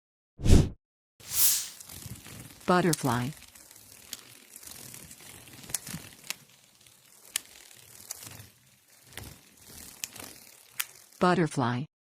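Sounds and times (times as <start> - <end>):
soft hiss: 1.3 - 2.0.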